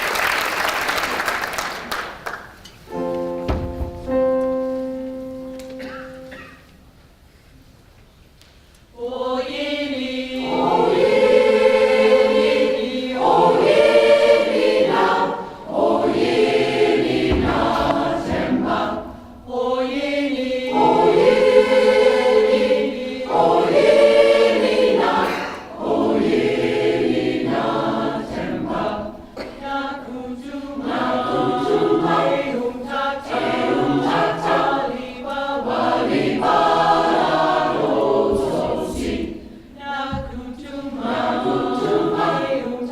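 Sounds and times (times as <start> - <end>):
choir singing in harmony: 8.8 - 42.9.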